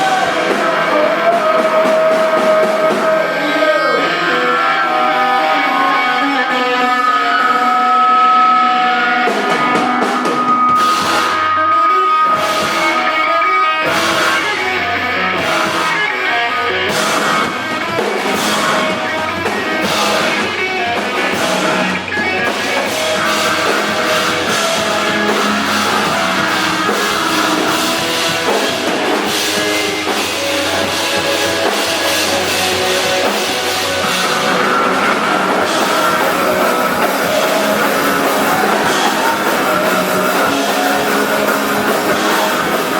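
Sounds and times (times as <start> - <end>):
live rock band playing: 0.0 - 42.9
drum hits: 16.9 - 42.9.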